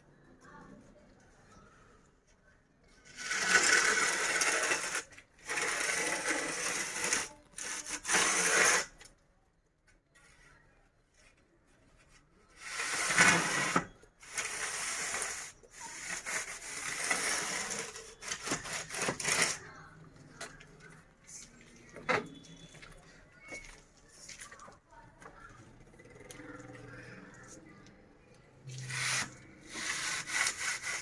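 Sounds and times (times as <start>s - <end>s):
rough scraping strokes: 3.1s - 9.1s, 12.6s - 19.7s, 28.7s - 31.0s.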